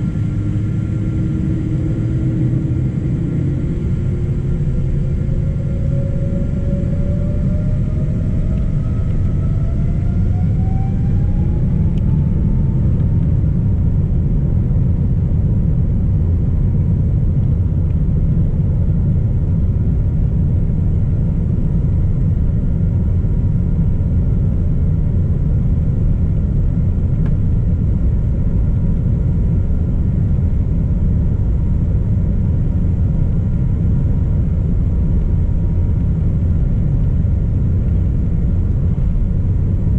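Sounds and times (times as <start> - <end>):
jet engines spooling up: 0.0 - 14.1.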